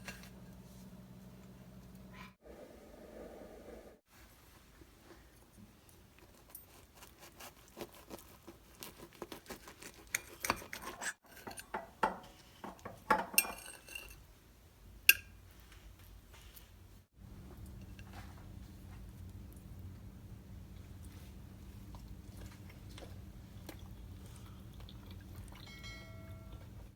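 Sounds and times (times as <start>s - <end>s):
cutlery clinking on a plate: 10.2s - 14.2s.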